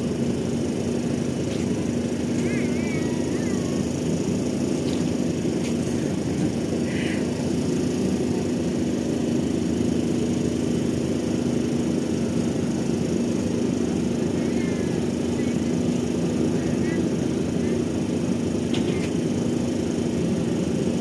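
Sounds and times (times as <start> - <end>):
ship engine droning: 0.0 - 21.0.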